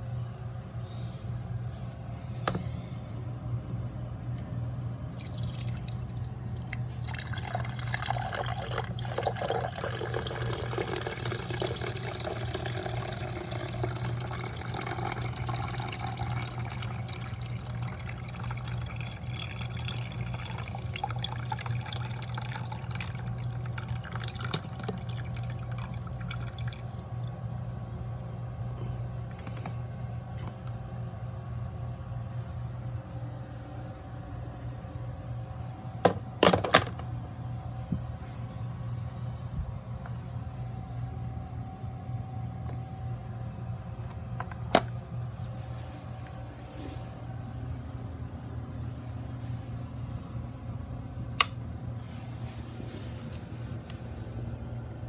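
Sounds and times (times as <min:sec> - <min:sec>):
low electrical hum: 0:00.0 - 0:55.0
water trickling and gurgling: 0:05.1 - 0:27.1.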